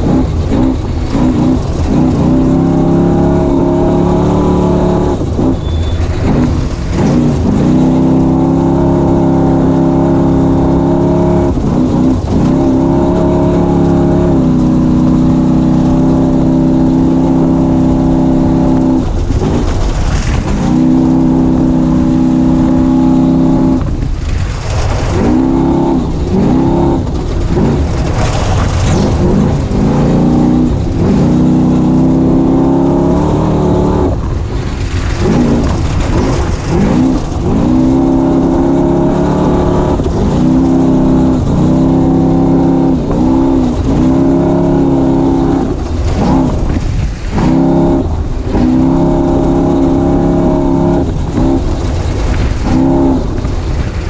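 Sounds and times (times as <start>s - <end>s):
race vehicle engine revving: 0.0s - 54.0s
rushing noise bursts: 23.0s - 54.0s.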